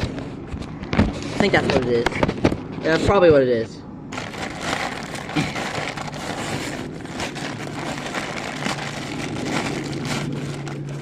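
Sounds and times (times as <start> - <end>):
plastic packaging crinkling: 4.1 - 11.0.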